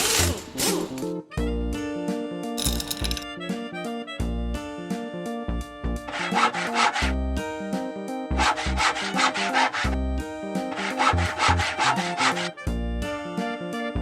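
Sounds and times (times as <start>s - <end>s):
background music: 0.0s - 14.0s
fast scraping rasping strokes: 6.1s - 7.1s, 8.4s - 10.0s, 10.6s - 12.6s.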